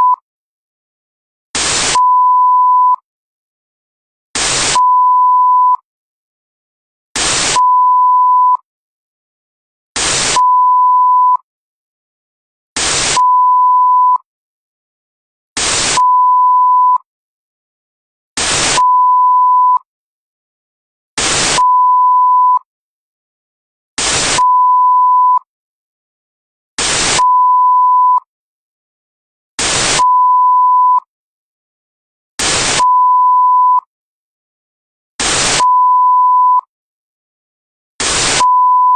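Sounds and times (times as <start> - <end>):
steady test-tone beep: 0.0 - 0.2, 1.8 - 3.0, 4.6 - 5.8, 7.4 - 8.6, 10.2 - 11.4, 13.0 - 14.3, 15.9 - 17.1, 18.6 - 19.8, 21.4 - 22.6, 24.3 - 25.4, 27.0 - 28.2, 29.9 - 31.0, 32.6 - 33.8, 35.4 - 36.7, 38.2 - 38.9
burst of static: 1.6 - 2.0, 4.4 - 4.8, 7.2 - 7.6, 10.0 - 10.4, 12.8 - 13.2, 15.6 - 16.0, 18.4 - 18.8, 21.2 - 21.6, 24.0 - 24.4, 26.8 - 27.2, 29.6 - 30.0, 32.4 - 32.8, 35.2 - 35.6, 38.0 - 38.4.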